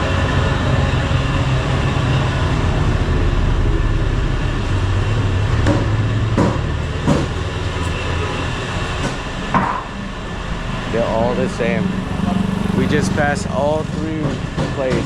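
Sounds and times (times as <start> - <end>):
street traffic hum: 0.0 - 15.0
sharp knocks: 5.5 - 7.5.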